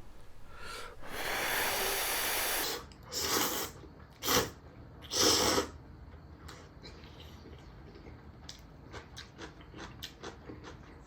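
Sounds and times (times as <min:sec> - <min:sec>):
person slurping hot noodles: 0:00.9 - 0:05.8.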